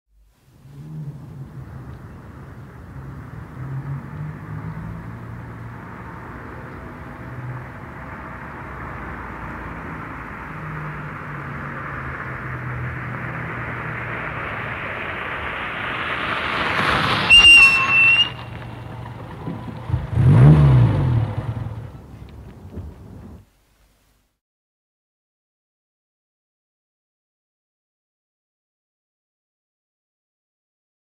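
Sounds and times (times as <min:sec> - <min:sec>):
tyre and road noise: 0:00.1 - 0:24.2
car engine hum: 0:00.2 - 0:24.0.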